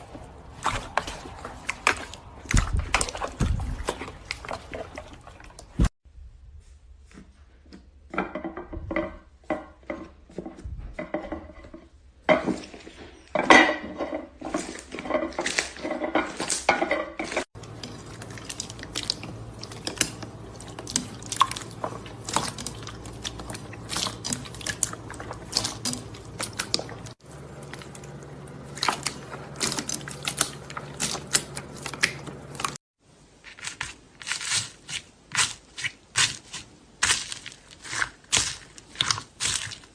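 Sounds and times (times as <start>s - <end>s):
slime squishing by hand: 0.0s - 5.9s, 14.4s - 32.8s, 33.4s - 39.9s.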